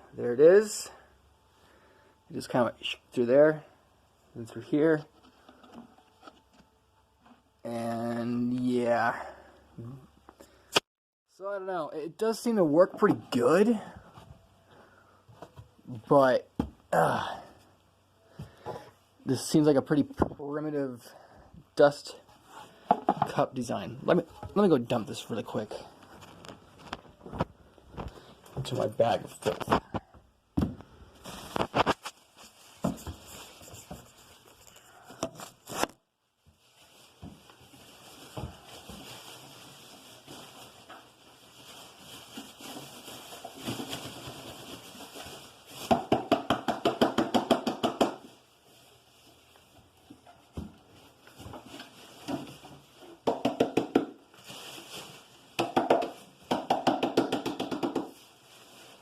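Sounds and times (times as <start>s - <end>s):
rustling of bag: 31.0s - 35.7s, 36.5s - 45.9s, 54.3s - 55.5s, 58.1s - 59.0s.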